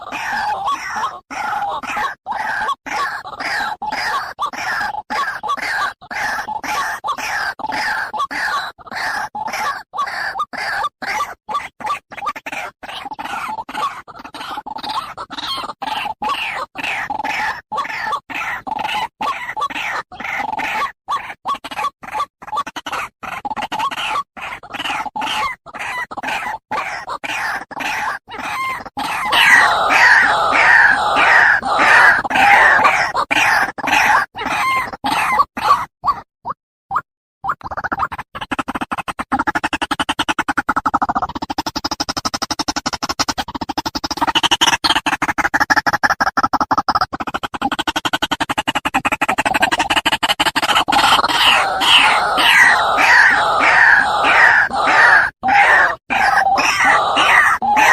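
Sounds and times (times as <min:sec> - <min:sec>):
waterhen calling: 0:29.2 - 0:33.1, 0:51.0 - 0:57.9.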